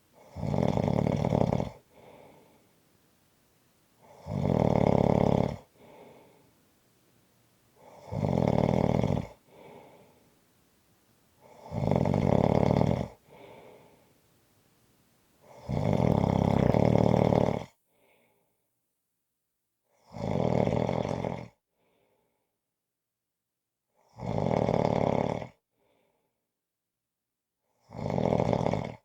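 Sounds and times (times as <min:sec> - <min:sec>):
person snoring heavily: 0:00.2 - 0:02.6, 0:04.0 - 0:06.5, 0:07.8 - 0:10.2, 0:11.4 - 0:14.1, 0:15.4 - 0:17.7, 0:20.1 - 0:21.5, 0:24.2 - 0:25.5, 0:27.9 - 0:29.0.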